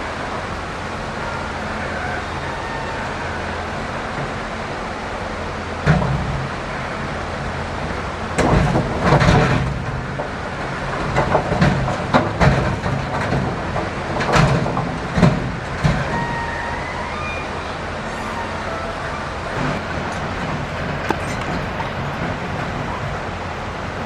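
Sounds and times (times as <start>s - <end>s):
excavator diesel engine: 0.0s - 24.0s.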